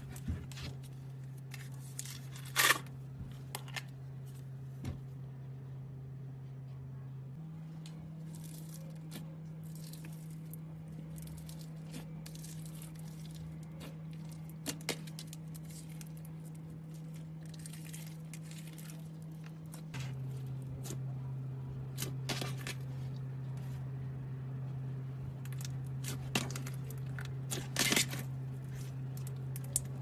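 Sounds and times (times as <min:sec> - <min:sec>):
steady low hum: 0:00.0 - 0:30.0
slime squishing by hand: 0:07.9 - 0:24.1.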